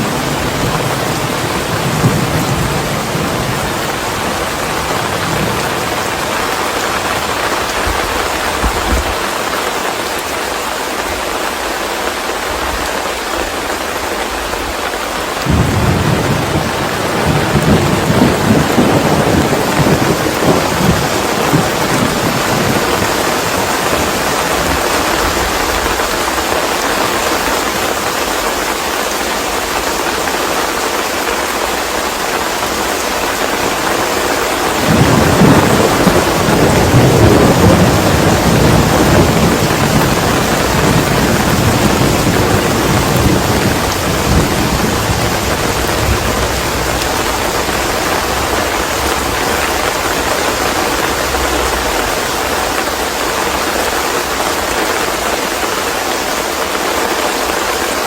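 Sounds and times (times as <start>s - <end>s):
thunder rumble: 0.0s - 9.6s, 15.4s - 27.2s, 33.1s - 55.6s
steady rain falling: 0.0s - 58.0s.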